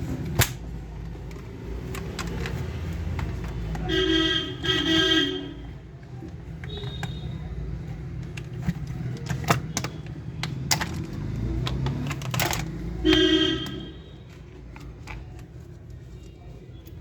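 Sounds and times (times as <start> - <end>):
small hard parts clicking: 6.0 - 17.0.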